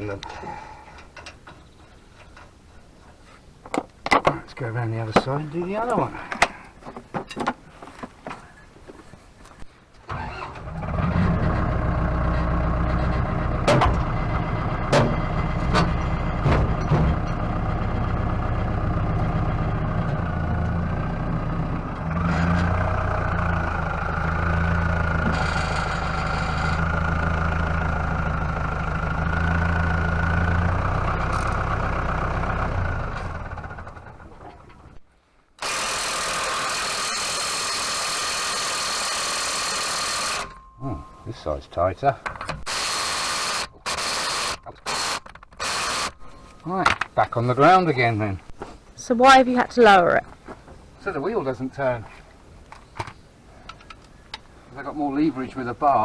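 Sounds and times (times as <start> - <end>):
engine running: 10.1 - 35.0, 35.6 - 41.3.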